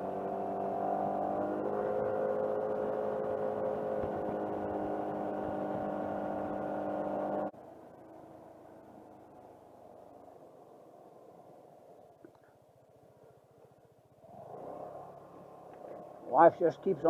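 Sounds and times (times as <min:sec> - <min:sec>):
vehicle engine running: 0:00.0 - 0:10.3.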